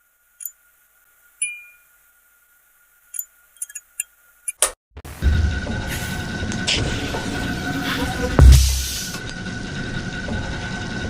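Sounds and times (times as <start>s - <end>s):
short burst of noise: 5.1s - 9.2s
electronic music with heavy beat: 6.6s - 9.2s.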